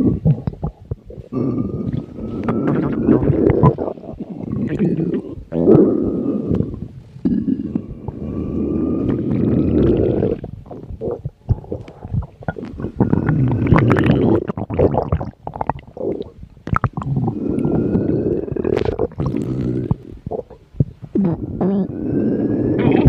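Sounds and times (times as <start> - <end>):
bubbly gurgles and squelches: 0.0 - 23.0
stomach growling: 0.0 - 23.0.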